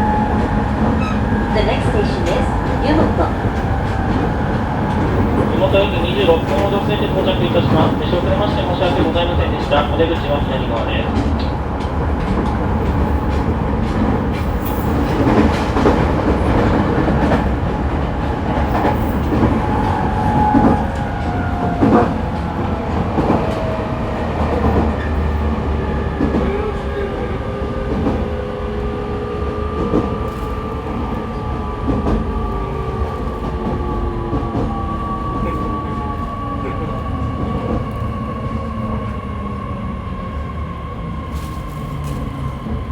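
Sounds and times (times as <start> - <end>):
train rumble: 0.0 - 42.9.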